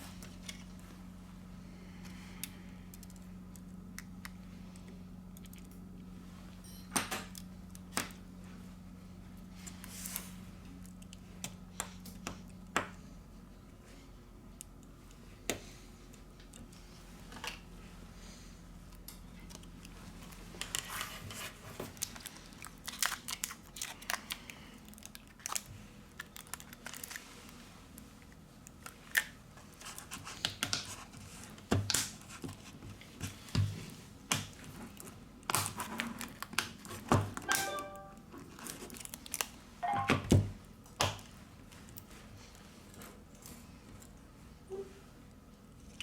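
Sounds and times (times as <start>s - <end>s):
crinkling rustle: 19.4s - 33.5s, 38.4s - 39.7s.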